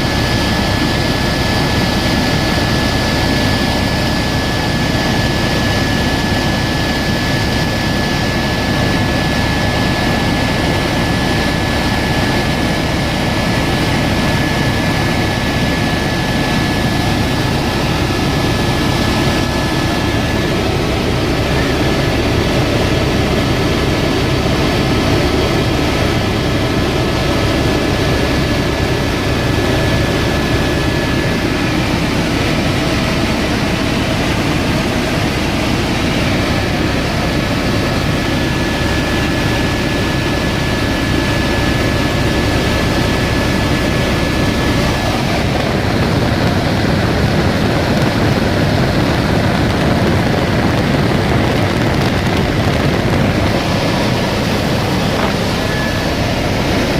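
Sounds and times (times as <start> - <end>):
helicopter engine and rotor: 0.0 - 56.9
faint high whine: 52.4 - 56.9.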